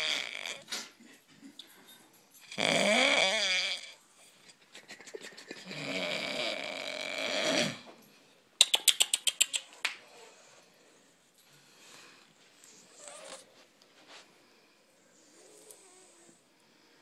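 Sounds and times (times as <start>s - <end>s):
pet snoring: 0.0s - 0.8s, 2.4s - 4.0s, 5.6s - 7.9s, 12.7s - 13.5s, 15.2s - 16.4s
sharp clicks: 8.6s - 9.9s.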